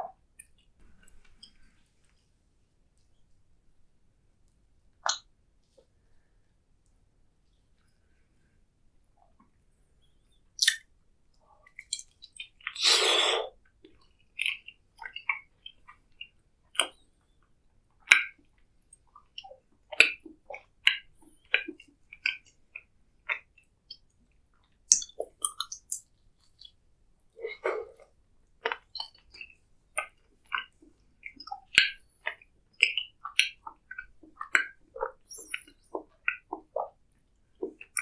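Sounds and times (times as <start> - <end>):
wet chewing smacks and clicks: 10.6 - 10.9, 11.7 - 12.8, 18.1 - 26.8, 27.4 - 38.0.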